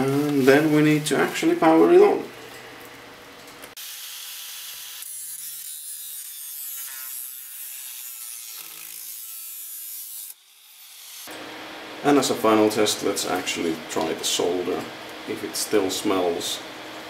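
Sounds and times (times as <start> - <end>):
electric fans whirring: 0.0 - 3.8, 11.3 - 17.0.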